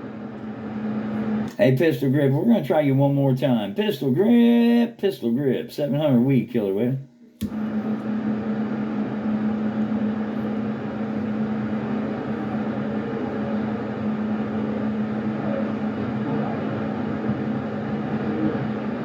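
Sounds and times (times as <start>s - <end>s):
radio static hiss: 11.8s - 19.0s.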